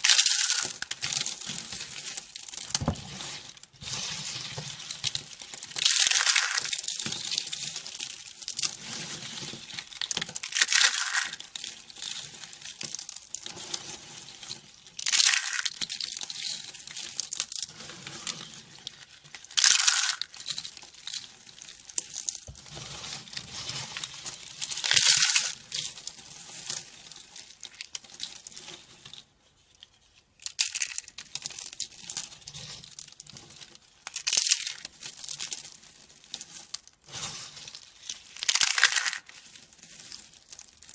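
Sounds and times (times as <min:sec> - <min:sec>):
dry soap crunching and crackling: 0:00.0 - 0:40.9.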